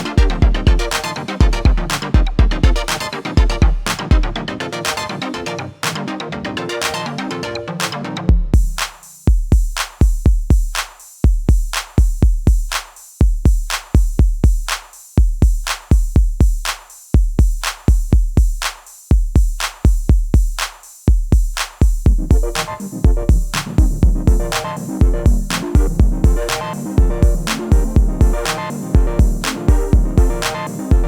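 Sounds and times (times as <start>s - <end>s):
drum machine beat: 0.0s - 5.2s, 7.8s - 31.0s
synth lines: 22.1s - 31.0s.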